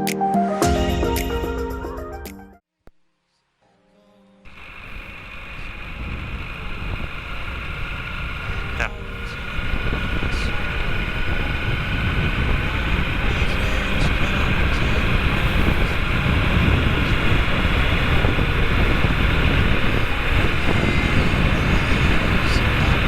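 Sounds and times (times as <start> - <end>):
motorcycle engine drone: 4.5 - 23.0
wind rushing over microphone: 5.1 - 23.0.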